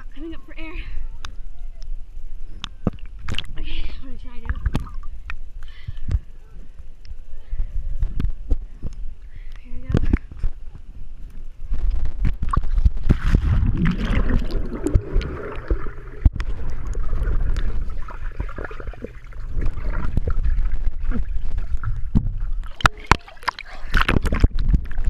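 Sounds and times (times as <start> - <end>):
pool water splashing: 12.6 - 24.4.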